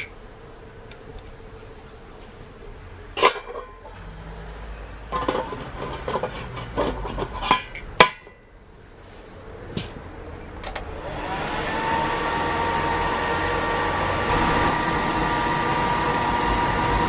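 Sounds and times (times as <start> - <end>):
low hum: 0.0 - 17.0
sharp metal clanks: 3.2 - 4.0, 5.1 - 8.6.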